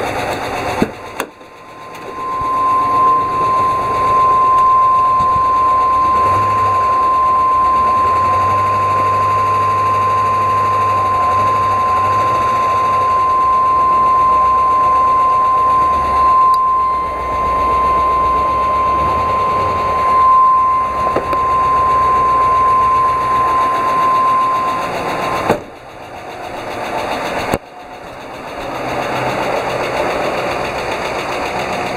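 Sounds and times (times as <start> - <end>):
bus engine running: 0.0 - 2.1, 23.1 - 31.9
steady high tone: 0.0 - 31.9.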